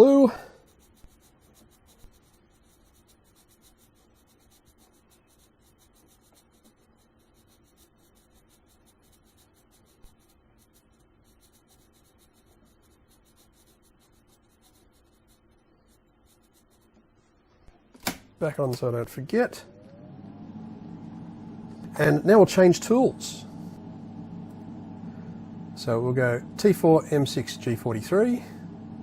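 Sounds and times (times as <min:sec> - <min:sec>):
marker pen scratching on metal: 0:00.5 - 0:17.2.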